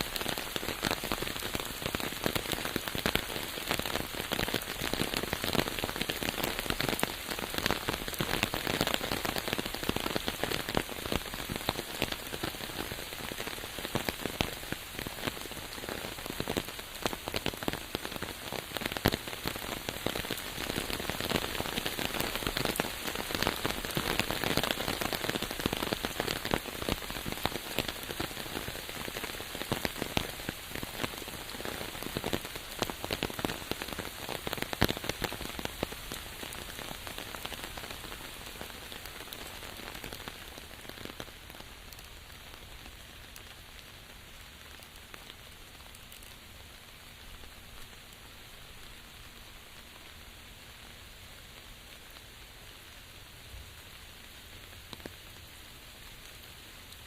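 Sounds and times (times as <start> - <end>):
steady rain pattering: 0.0 - 57.0.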